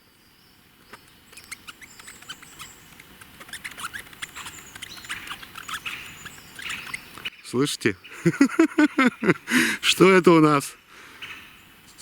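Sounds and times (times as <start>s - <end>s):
mushroom squeaking against teeth: 1.3s - 7.2s.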